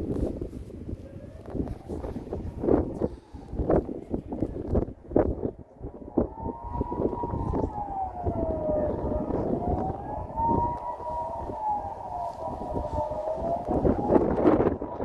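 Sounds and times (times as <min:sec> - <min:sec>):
distant wailing siren: 0:00.0 - 0:15.0
low rumbling noise: 0:00.0 - 0:15.0.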